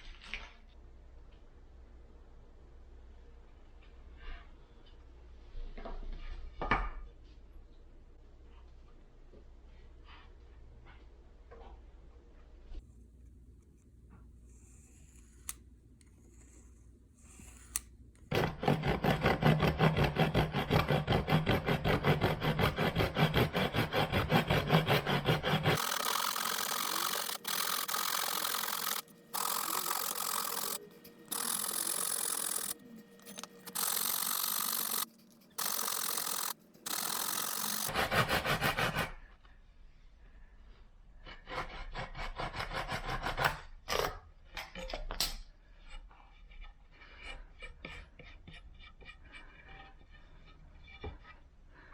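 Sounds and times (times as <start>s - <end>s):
rasping on wood: 16.2s - 39.1s.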